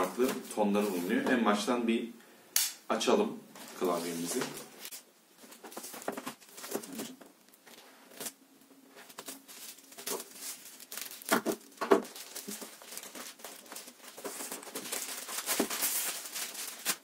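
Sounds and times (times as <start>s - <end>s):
cardboard packaging rustling: 3.6s - 17.0s.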